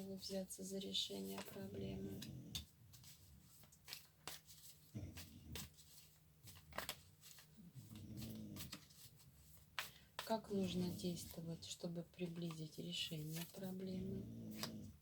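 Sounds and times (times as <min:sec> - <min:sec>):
cards tapping and rustling: 0:01.2 - 0:11.4, 0:14.5 - 0:14.9.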